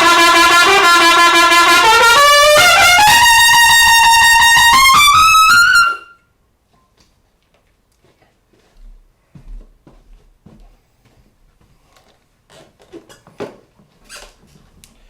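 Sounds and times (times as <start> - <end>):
trumpet fast tongued notes: 0.0 - 6.2.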